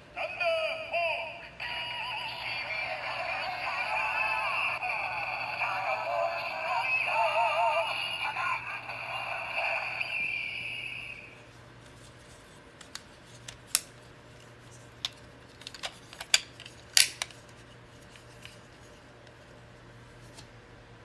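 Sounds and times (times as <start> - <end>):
plastic toy clicks and snaps: 12.8 - 14.0, 15.0 - 17.5.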